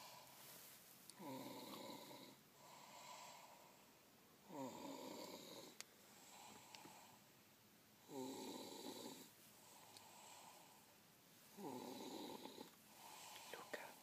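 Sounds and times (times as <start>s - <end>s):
person snoring: 1.2s - 3.7s, 4.5s - 7.2s, 8.0s - 10.8s, 11.5s - 13.7s.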